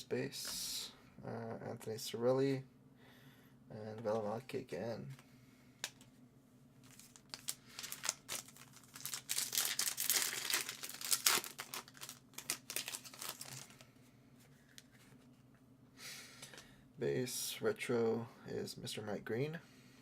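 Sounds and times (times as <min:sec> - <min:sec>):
wrapper tearing and crinkling: 0:06.8 - 0:13.8.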